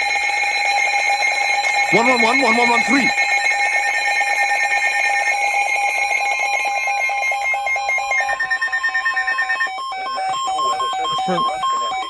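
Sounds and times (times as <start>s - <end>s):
rapid alert beeping: 1.9s - 3.1s.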